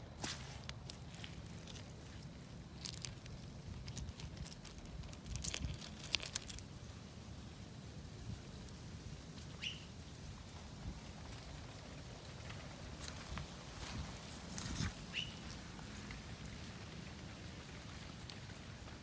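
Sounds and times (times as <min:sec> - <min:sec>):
rustling handling sounds: 0:00.0 - 0:06.8.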